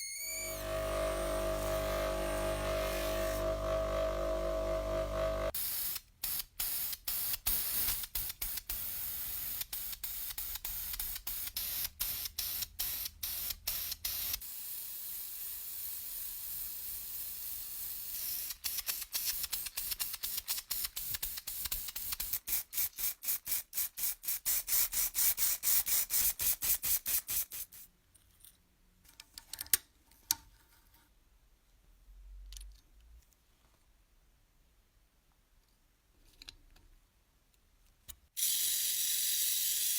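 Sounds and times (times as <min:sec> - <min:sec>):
spray paint hissing: 0:05.5 - 0:27.8.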